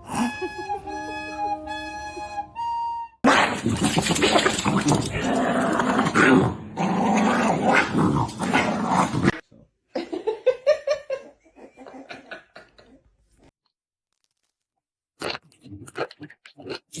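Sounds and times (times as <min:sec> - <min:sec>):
dog growling: 0:03.3 - 0:09.4.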